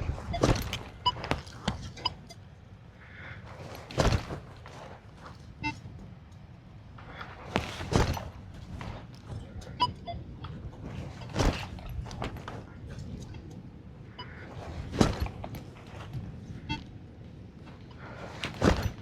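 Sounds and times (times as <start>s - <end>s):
metal detector beeps: 9.7s - 10.2s.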